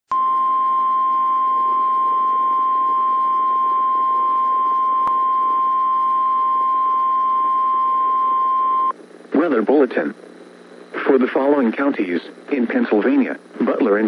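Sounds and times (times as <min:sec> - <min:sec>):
steady warning alarm beep: 0:00.2 - 0:08.9
radio hiss: 0:08.0 - 0:14.0.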